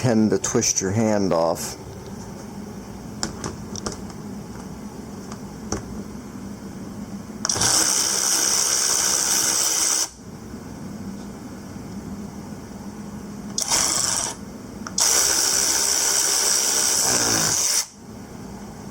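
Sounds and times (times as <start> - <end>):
electric ratchet wrench motor: 7.5 - 10.2, 13.6 - 14.4, 15.0 - 18.0.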